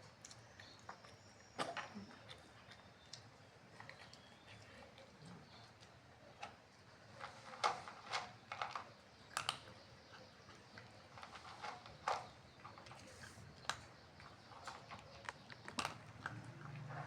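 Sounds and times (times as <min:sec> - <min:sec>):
cat chewing food: 0:12.3 - 0:17.0.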